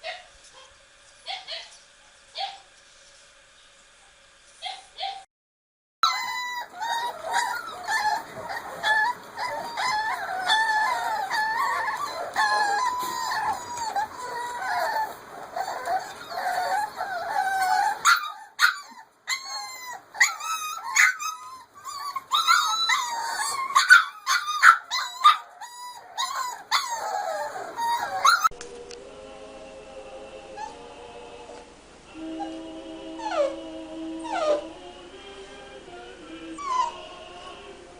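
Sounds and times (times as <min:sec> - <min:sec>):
dog howling: 0:06.0 - 0:28.5, 0:32.2 - 0:34.7, 0:36.5 - 0:37.0.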